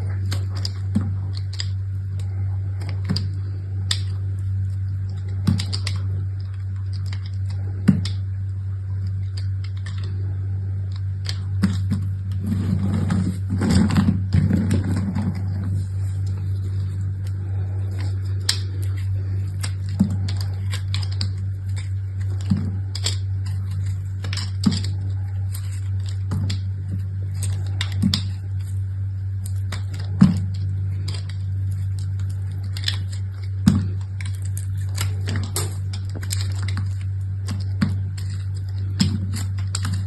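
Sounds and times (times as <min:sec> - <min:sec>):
steady low hum: 0:00.0 - 0:40.0
packaging crackling: 0:11.0 - 0:40.0.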